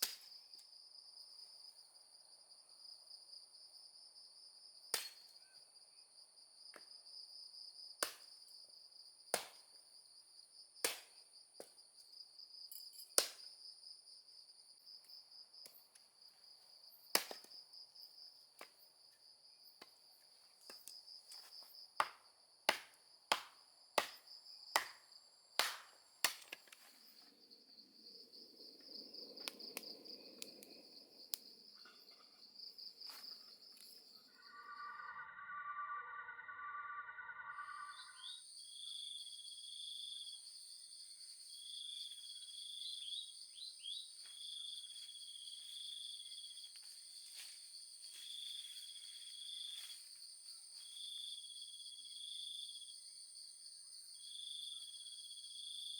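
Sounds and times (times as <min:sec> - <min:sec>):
insects trilling: 0:12.1 - 0:55.9.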